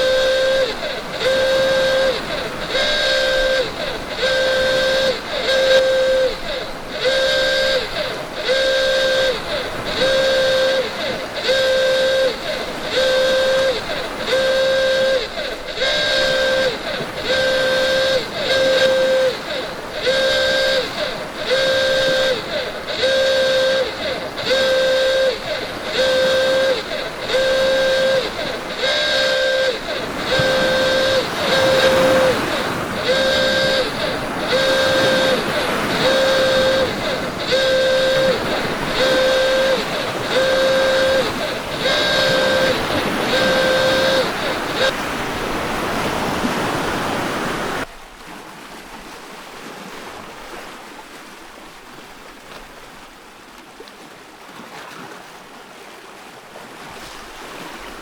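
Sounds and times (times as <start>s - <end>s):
buzzy alarm horn blasts: 0.0s - 45.0s.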